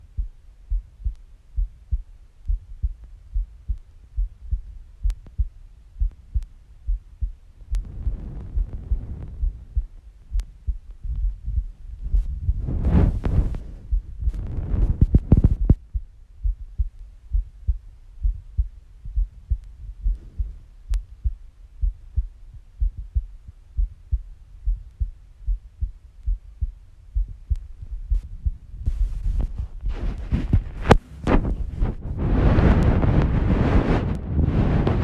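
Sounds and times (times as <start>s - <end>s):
heartbeat thumps: 0.0s - 35.0s
scratchy handling noise: 12.2s - 15.8s, 28.8s - 33.4s.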